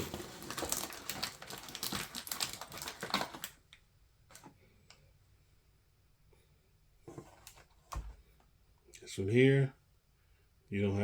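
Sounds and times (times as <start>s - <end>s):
packaging crinkling: 0.0s - 3.7s.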